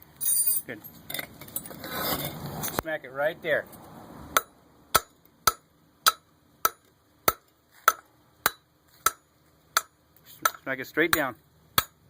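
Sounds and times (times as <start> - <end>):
hammer striking metal: 4.4 - 12.0.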